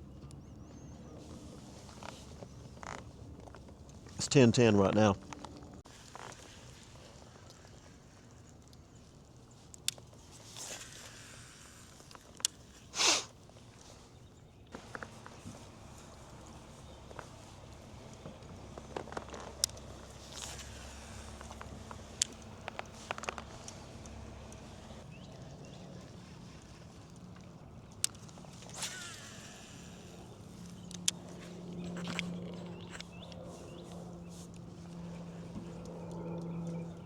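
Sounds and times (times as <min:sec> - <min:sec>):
fishing gear clicks and knocks: 0:14.7 - 0:36.9.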